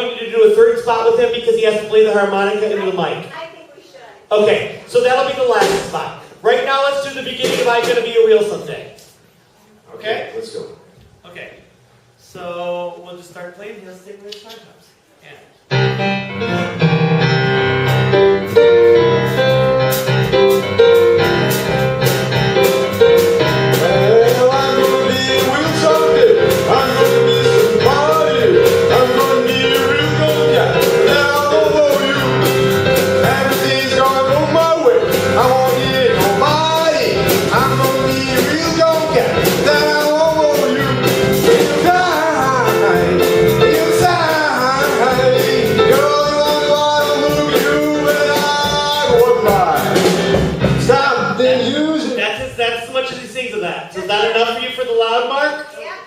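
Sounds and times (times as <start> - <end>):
live band playing: 7.0 - 8.3, 15.7 - 52.6
person singing: 23.7 - 50.2, 50.8 - 52.0.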